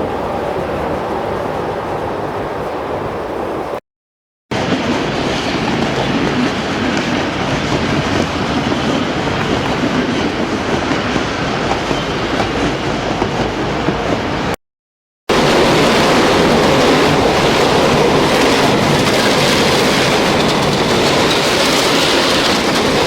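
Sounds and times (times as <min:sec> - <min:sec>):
train rumbling on rails: 0:00.0 - 0:03.8, 0:04.5 - 0:14.6, 0:15.3 - 0:23.0
wheels clickety-clack: 0:04.6 - 0:14.6, 0:15.3 - 0:23.0.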